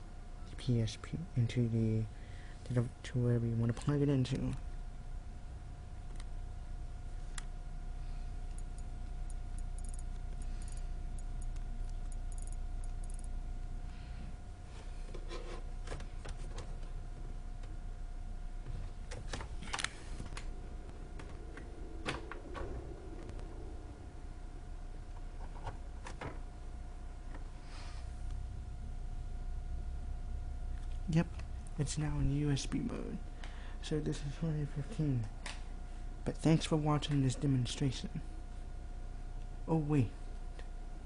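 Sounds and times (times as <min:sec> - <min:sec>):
faint steady hum: 0:00.0 - 0:41.0.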